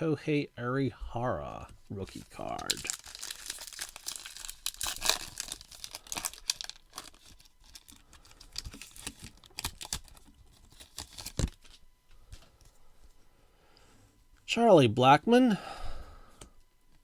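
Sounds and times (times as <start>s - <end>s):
cards rustling: 2.0s - 11.8s
wrapper tearing and crinkling: 2.1s - 11.8s.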